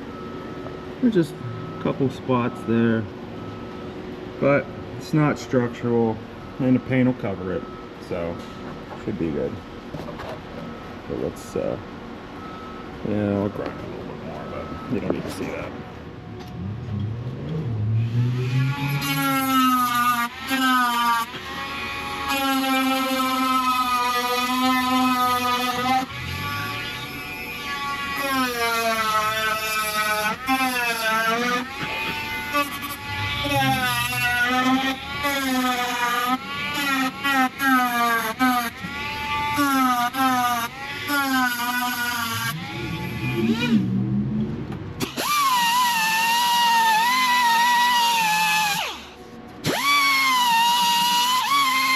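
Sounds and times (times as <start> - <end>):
angle grinder grinding metal: 16.5 - 51.9.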